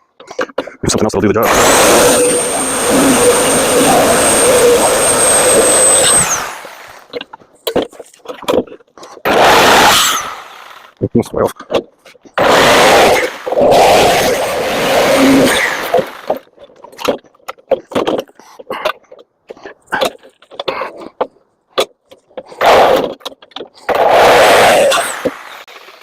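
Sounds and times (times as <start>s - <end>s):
reciprocating saw cutting metal: 1.4s - 7.2s, 9.3s - 11.0s, 12.4s - 16.4s, 23.8s - 25.7s.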